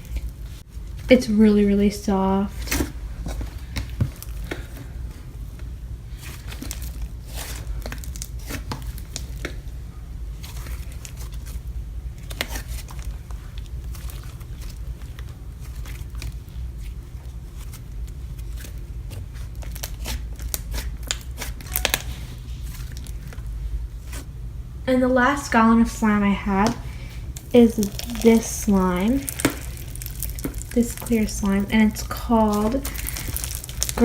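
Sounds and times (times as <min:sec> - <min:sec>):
steady low hum: 0:00.0 - 0:34.0
slime crackling and clicking: 0:27.4 - 0:34.0.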